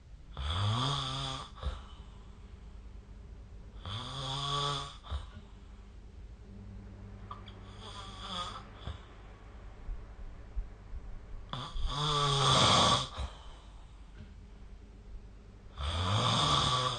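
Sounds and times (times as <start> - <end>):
person snoring: 0.3 - 2.2, 3.8 - 5.4, 7.3 - 9.2, 11.5 - 13.9, 15.7 - 16.9.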